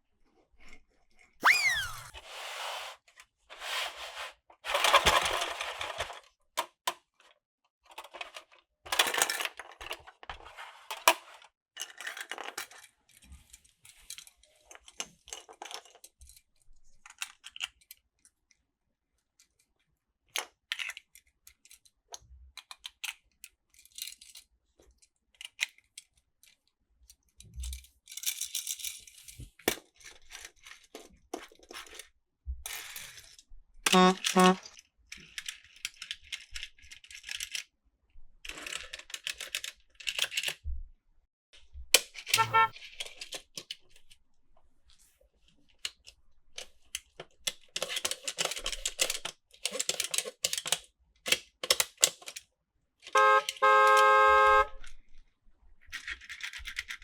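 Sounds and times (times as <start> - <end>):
plastic toy train clattering: 4.7 - 18.0, 22.6 - 24.5, 27.7 - 32.1, 32.7 - 33.4, 34.0 - 37.7, 38.4 - 40.6, 42.0 - 44.2, 45.7 - 52.5, 55.8 - 57.0.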